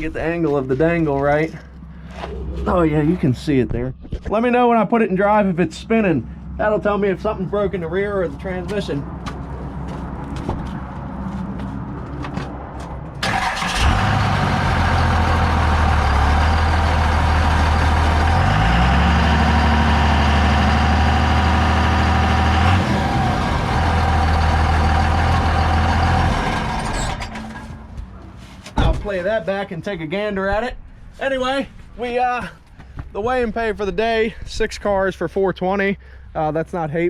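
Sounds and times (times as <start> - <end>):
truck engine and drivetrain running: 6.3 - 29.0.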